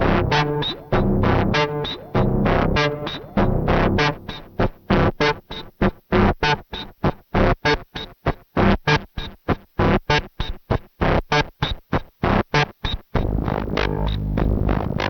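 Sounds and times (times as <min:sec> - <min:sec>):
sustained bass synth tone: 0:13.2 - 0:15.0.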